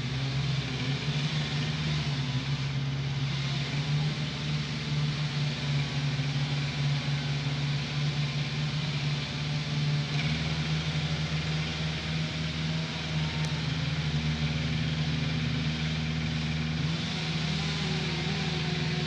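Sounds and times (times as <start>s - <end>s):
engine running steadily: 0.0s - 19.0s.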